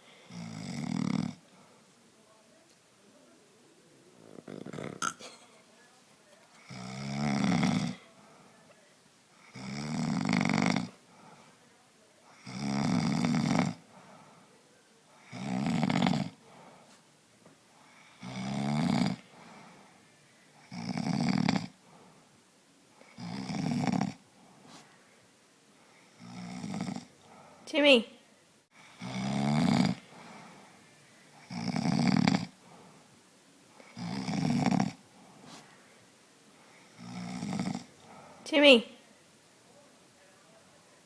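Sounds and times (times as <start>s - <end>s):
man snoring: 0.3s - 1.4s, 4.2s - 5.2s, 6.6s - 8.0s, 9.4s - 11.0s, 12.4s - 13.8s, 15.2s - 16.4s, 18.1s - 19.2s, 20.6s - 21.8s, 23.1s - 24.2s, 26.1s - 27.1s, 28.9s - 30.0s, 31.4s - 32.6s, 33.9s - 35.0s, 36.9s - 38.2s.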